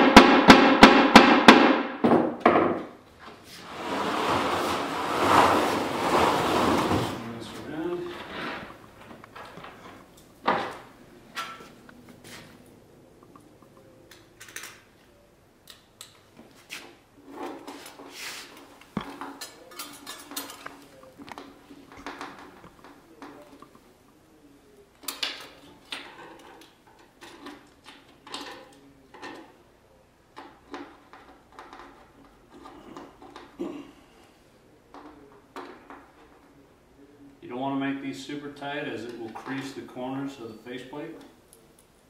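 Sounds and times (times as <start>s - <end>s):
sharp knocks: 0.0s - 2.9s
light metal clinks and scrapes: 17.4s - 21.1s.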